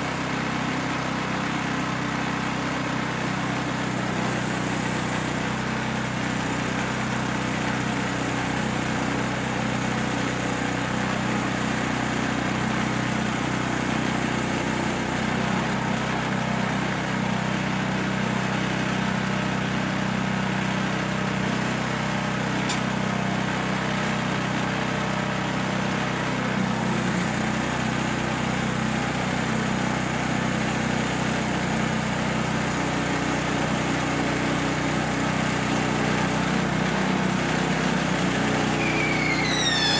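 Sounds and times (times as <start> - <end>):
small gasoline engine running: 0.0 - 39.9
saw blade cutting log: 37.8 - 39.9.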